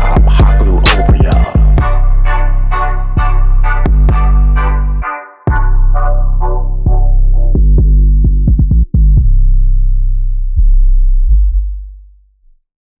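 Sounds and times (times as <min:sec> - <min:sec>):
trap beat with heavy bass: 0:00.0 - 0:02.4, 0:05.5 - 0:09.5.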